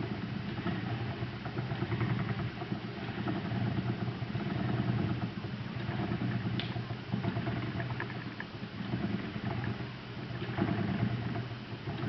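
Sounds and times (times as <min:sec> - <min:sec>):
spinning wheel drone: 0:00.0 - 0:12.0
spinning wheel clicks: 0:05.8 - 0:09.8.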